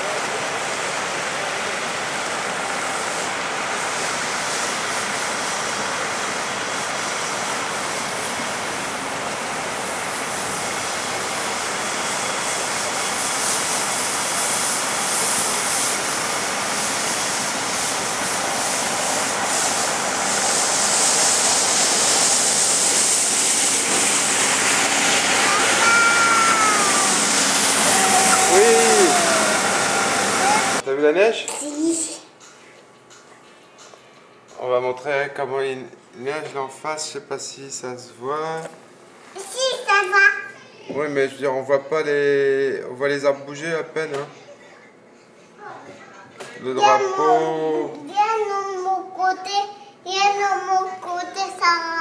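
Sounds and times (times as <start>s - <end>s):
steady rushing noise: 0.0s - 30.9s.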